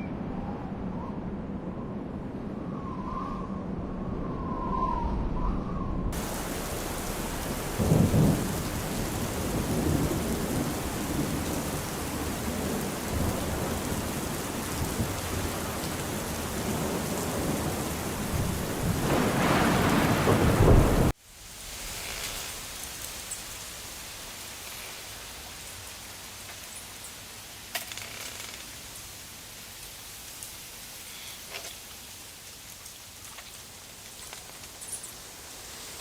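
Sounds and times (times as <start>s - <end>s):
thunder rumbling: 0.0s - 21.2s
steady rain falling: 6.1s - 36.0s.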